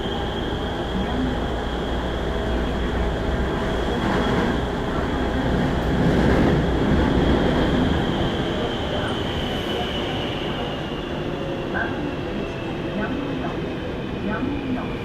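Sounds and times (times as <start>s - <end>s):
high-pitched whine: 0.0s - 5.5s
train wheels rumbling on track: 0.0s - 15.0s.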